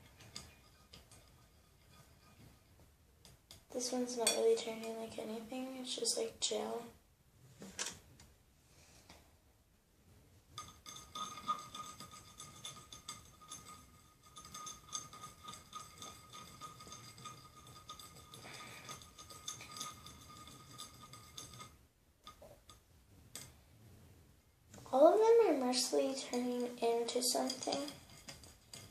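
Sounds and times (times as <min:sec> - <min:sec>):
utensil scraping a plate: 0:00.0 - 0:02.8, 0:10.8 - 0:21.8, 0:26.3 - 0:28.9.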